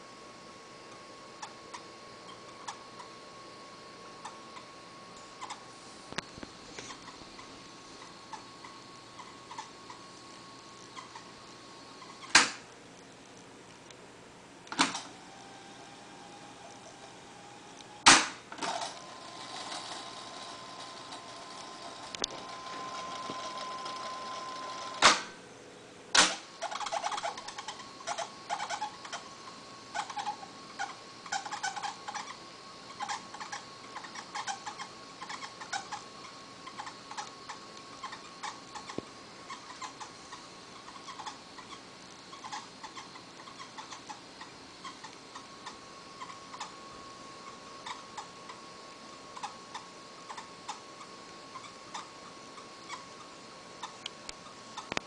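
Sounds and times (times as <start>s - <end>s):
tape reel winding whine: 0.8s - 12.7s, 14.7s - 25.4s, 26.3s - 55.0s
squeaks and ticks: 1.4s - 3.2s, 4.2s - 10.0s, 10.8s - 11.4s, 12.0s - 12.5s, 18.8s - 25.0s, 26.6s - 29.3s, 29.9s - 46.8s, 47.4s - 48.6s, 49.4s - 55.0s.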